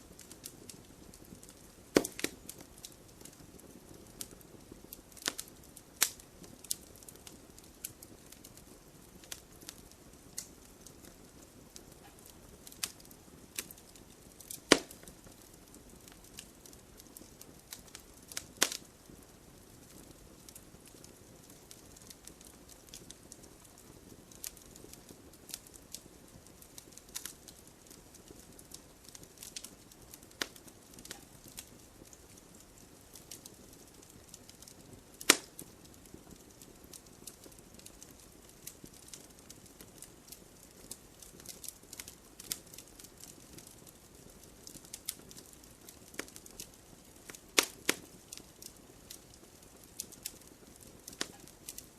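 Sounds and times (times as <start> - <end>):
campfire crackling and popping: 0.0 - 51.9
soft low hiss: 0.0 - 51.9
loud wood snaps: 2.0 - 2.4, 14.5 - 15.0, 35.2 - 35.5, 47.6 - 48.1.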